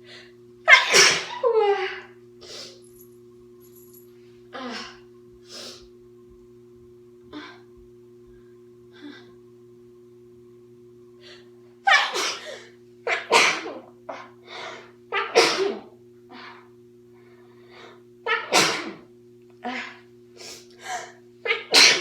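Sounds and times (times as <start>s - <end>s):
woman sneezing: 0.7s - 1.4s, 11.9s - 13.8s, 15.2s - 15.9s, 18.3s - 19.0s, 20.8s - 22.0s.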